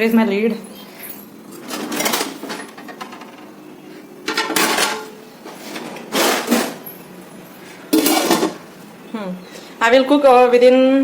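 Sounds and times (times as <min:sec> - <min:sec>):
metal kitchenware clinking: 0:00.7 - 0:03.3, 0:04.2 - 0:06.9, 0:07.9 - 0:08.6.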